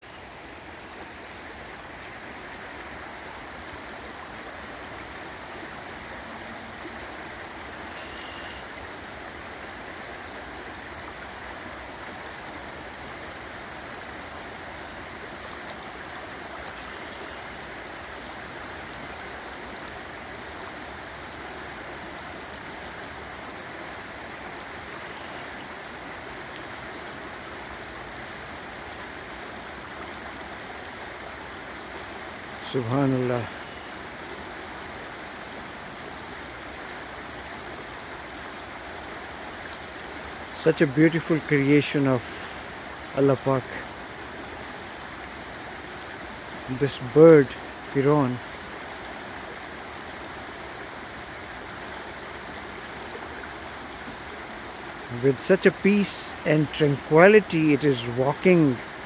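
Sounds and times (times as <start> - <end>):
river water rushing: 0.0 - 59.0.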